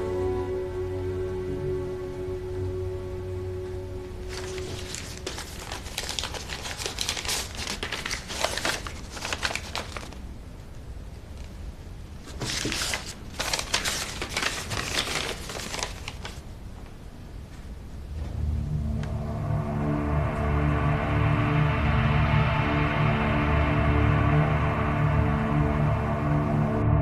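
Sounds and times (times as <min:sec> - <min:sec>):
low steady hum: 0:00.0 - 0:27.0
crinkling and rustling: 0:04.2 - 0:10.3, 0:12.2 - 0:18.4.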